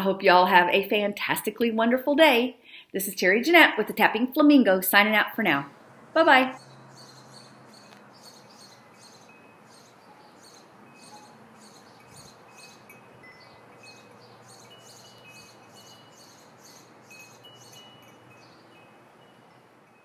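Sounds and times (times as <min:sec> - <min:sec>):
faint tinkling chimes: 0:06.6 - 0:20.0
soft rhythmic shimmer: 0:08.7 - 0:20.0.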